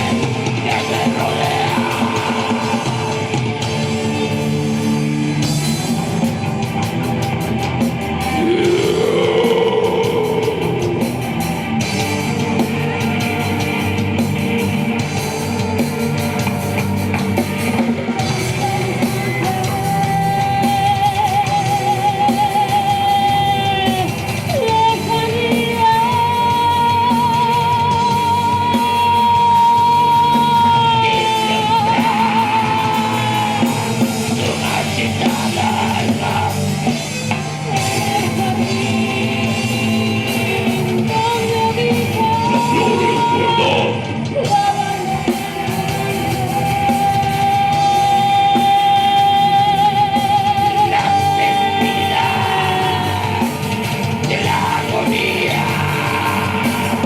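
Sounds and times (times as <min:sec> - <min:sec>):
rock band playing live: 0:00.0 - 0:57.0.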